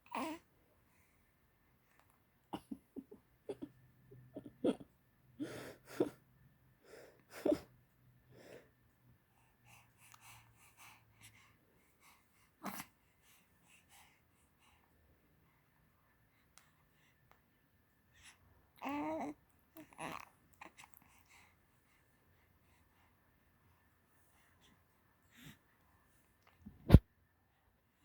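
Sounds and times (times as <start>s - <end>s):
soft baby breathing: 6.8s - 27.0s.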